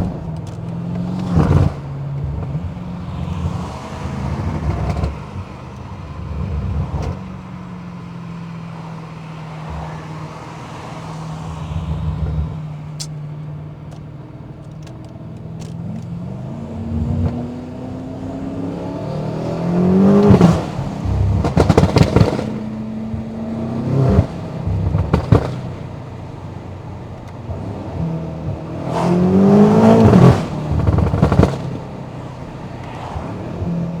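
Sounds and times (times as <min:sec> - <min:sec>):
exhaust pops and crackles: 0:00.0 - 0:18.5, 0:19.3 - 0:34.0
car engine revving: 0:00.0 - 0:34.0.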